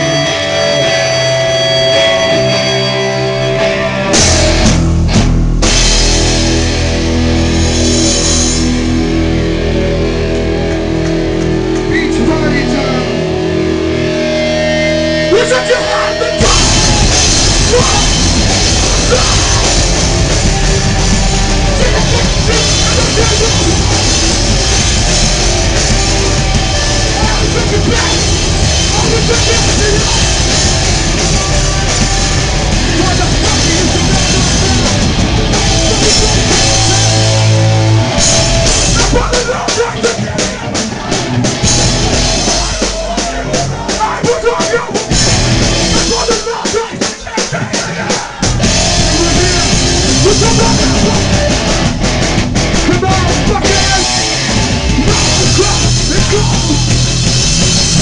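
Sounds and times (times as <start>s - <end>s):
punk band playing live: 0.0s - 58.0s.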